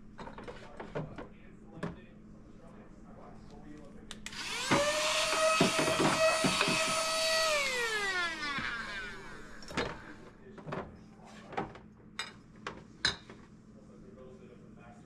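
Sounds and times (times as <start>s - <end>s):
vacuum cleaner motor whining: 4.3s - 10.3s.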